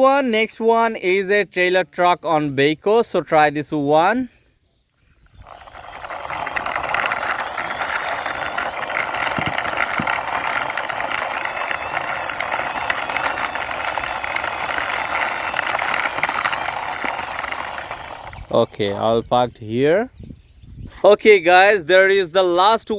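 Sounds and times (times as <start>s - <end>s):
toy truck wheels rolling and rattling: 5.2s - 19.0s.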